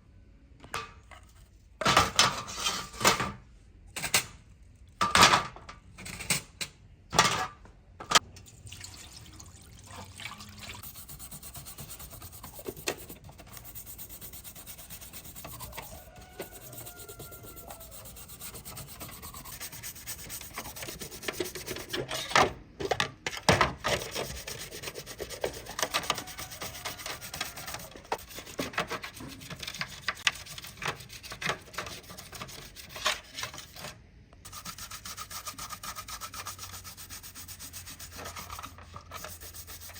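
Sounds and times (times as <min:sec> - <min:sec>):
abrasive rubbing on hard surface: 0:10.8 - 0:22.0.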